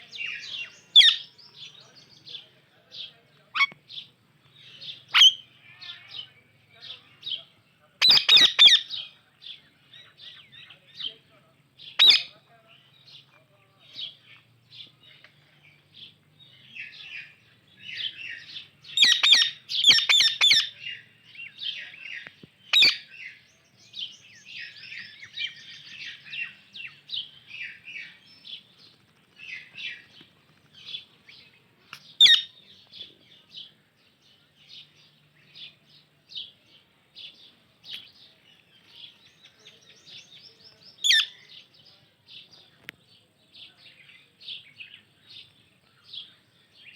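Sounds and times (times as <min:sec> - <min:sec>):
parakeets chirping: 0:00.1 - 0:01.3, 0:08.0 - 0:09.0, 0:12.0 - 0:12.3, 0:18.0 - 0:20.8, 0:22.7 - 0:23.1, 0:32.1 - 0:32.5
loud sharp parakeet calls: 0:00.2 - 0:01.3, 0:05.1 - 0:06.0, 0:08.0 - 0:09.0, 0:11.9 - 0:12.3, 0:18.0 - 0:20.8, 0:22.7 - 0:23.3, 0:32.2 - 0:32.5, 0:41.0 - 0:41.4.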